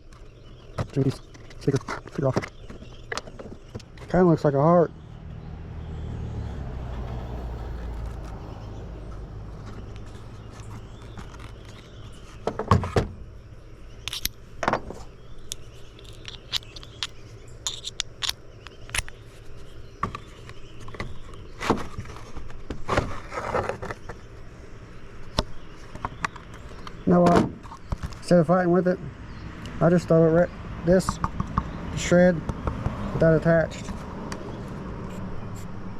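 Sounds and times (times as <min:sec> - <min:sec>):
hand tools clicking on metal: 0:14.1 - 0:14.4, 0:15.5 - 0:19.2.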